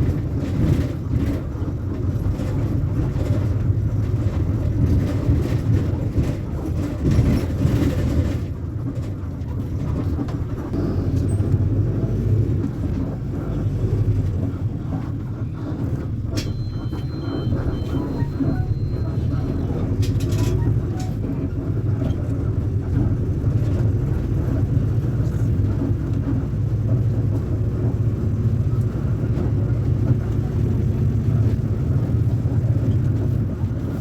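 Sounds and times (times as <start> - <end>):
diesel bus engine rumbling: 0.0 - 34.0
electronic tone with short beeps: 16.4 - 21.4.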